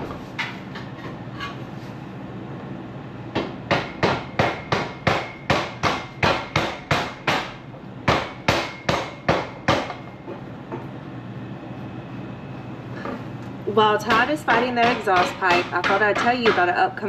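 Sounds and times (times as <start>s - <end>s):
hammer striking metal: 3.4s - 10.0s, 14.1s - 16.7s.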